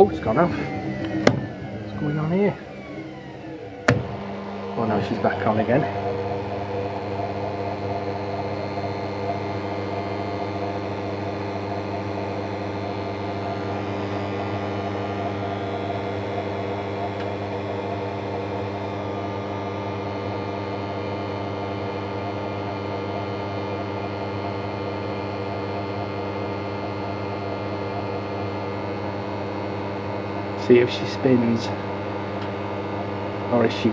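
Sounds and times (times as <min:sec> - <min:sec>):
washing machine humming: 0:00.0 - 0:33.9.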